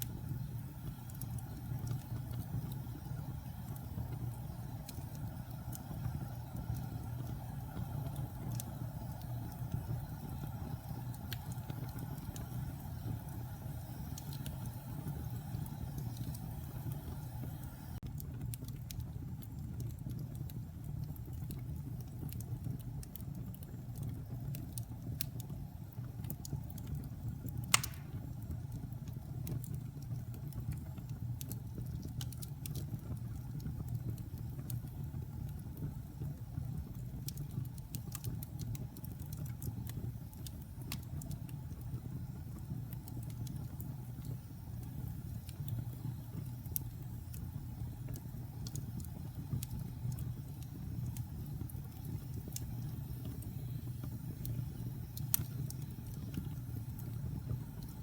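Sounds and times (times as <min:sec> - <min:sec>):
fire crackles: 0:00.0 - 0:58.0
low rumble of flame: 0:00.0 - 0:58.0
loud pop of burning wood: 0:27.7 - 0:28.4.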